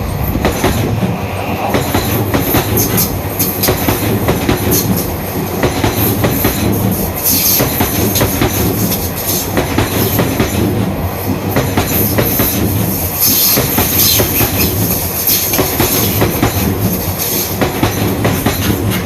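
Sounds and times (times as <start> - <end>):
train rolling rumble: 0.0 - 19.0.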